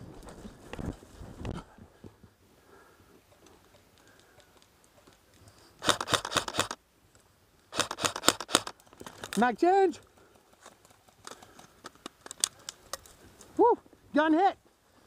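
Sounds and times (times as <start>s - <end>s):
airsoft rifle full-auto burst: 5.8s - 6.8s, 7.7s - 8.7s.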